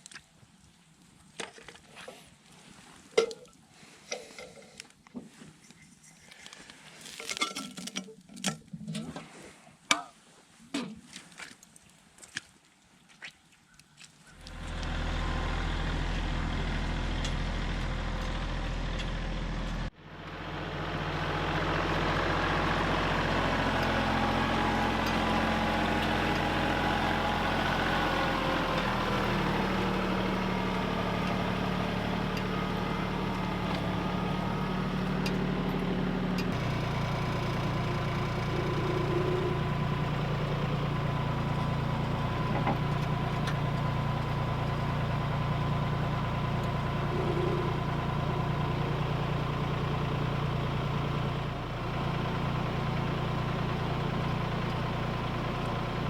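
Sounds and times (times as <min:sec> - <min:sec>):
heavy engine running: 0:14.4 - 0:56.0.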